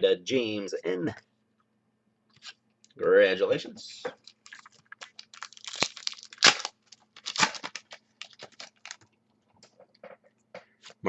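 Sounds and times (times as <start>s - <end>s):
foil pack ripping: 4.2s - 9.0s
foil wrapper crinkling: 4.2s - 9.2s.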